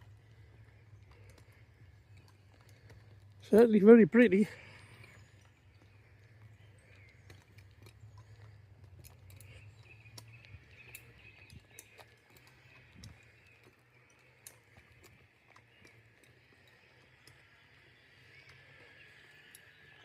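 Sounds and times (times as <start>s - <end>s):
faint outdoor ambience: 0.0s - 20.0s
light clicks: 4.8s - 20.0s.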